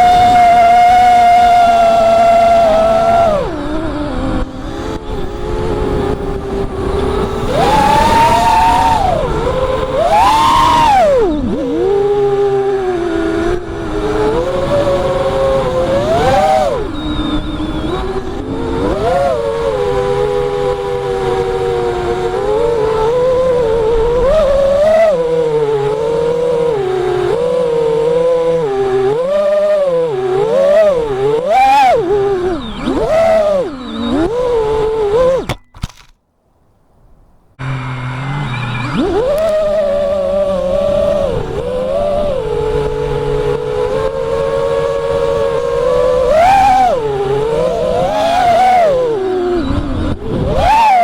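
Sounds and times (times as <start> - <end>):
drone motors and propellers whining: 0.0 - 36.2, 37.6 - 51.0
sharp clicks: 35.4 - 36.2.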